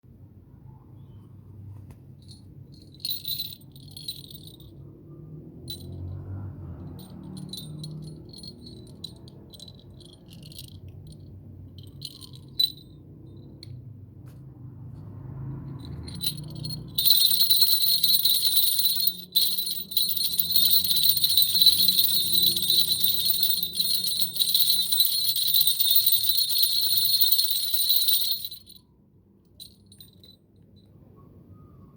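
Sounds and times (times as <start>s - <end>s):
small bells jingling: 2.2s - 4.9s, 5.5s - 13.7s, 15.7s - 28.9s, 29.6s - 30.9s.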